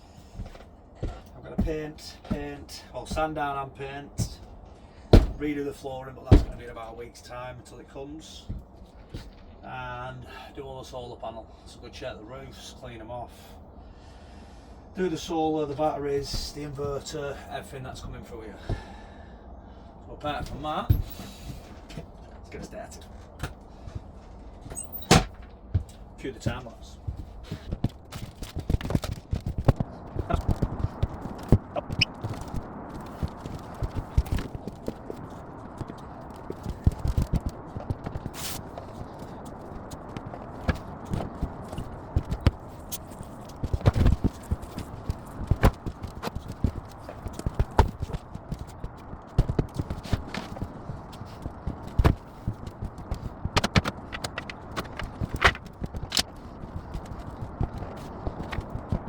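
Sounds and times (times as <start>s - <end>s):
rapid knocks and clatters: 4.2s - 5.5s, 6.3s - 6.7s, 25.2s - 59.0s
loud bangs: 5.1s - 5.5s
short squeaky blips: 31.8s - 32.2s.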